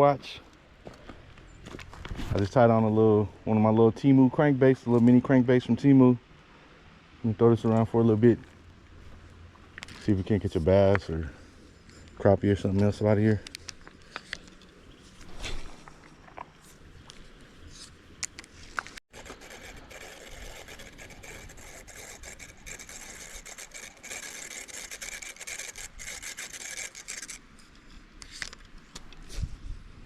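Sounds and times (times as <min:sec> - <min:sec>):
fishing reel ticking: 0:19.2 - 0:27.4.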